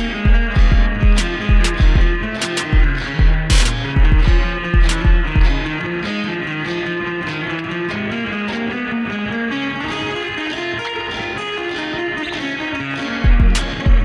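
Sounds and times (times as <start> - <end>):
melodic electric guitar: 0.0 - 14.0
heavy deep bass hits: 0.1 - 5.6.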